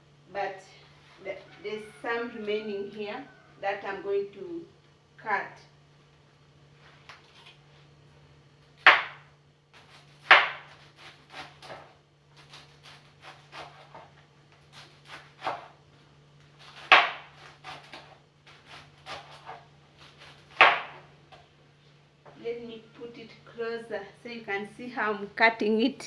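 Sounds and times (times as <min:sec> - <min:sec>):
knife cutting leafy stems: 0:09.8 - 0:15.8, 0:16.6 - 0:21.0.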